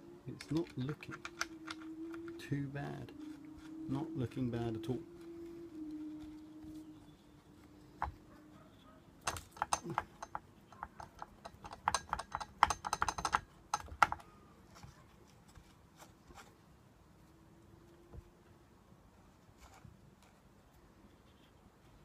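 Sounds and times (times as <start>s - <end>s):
faint ringing tone: 0.0s - 8.6s.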